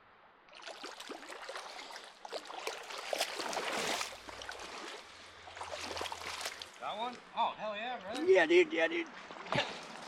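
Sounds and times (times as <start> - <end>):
water splashing in a creek: 0.5 - 7.3, 9.0 - 10.0.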